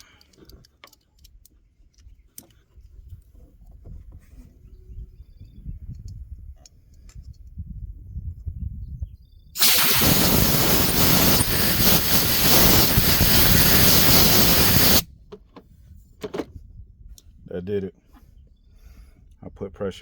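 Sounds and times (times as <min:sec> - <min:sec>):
compressed air hissing: 0:09.6 - 0:15.0.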